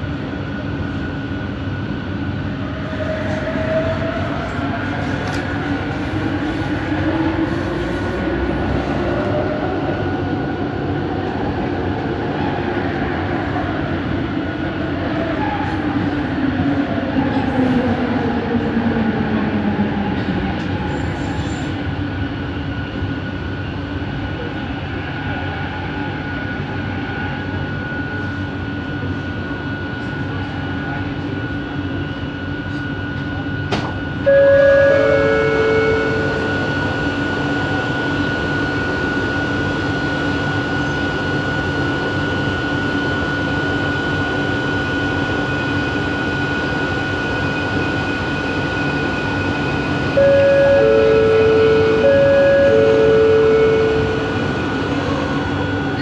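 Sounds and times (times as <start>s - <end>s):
train running noise: 0.0s - 56.0s
steady high tone: 34.2s - 41.0s, 47.7s - 56.0s
motor whine gliding in pitch: 50.1s - 55.9s.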